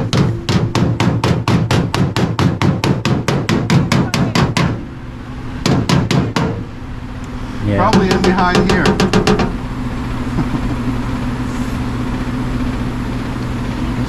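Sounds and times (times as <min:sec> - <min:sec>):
hammer beating sheet metal: 0:00.0 - 0:04.9, 0:05.6 - 0:06.7, 0:07.8 - 0:09.6
steady low hum: 0:00.0 - 0:14.0.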